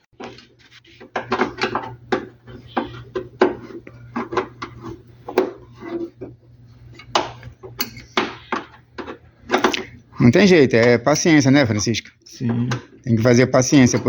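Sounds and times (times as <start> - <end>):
metal tools clinking on engine parts: 7.8 - 8.2.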